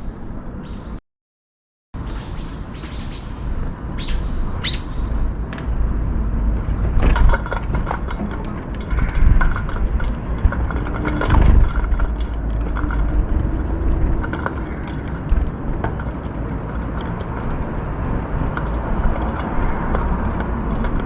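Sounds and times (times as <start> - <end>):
wind buffeting microphone: 2.0 - 21.0.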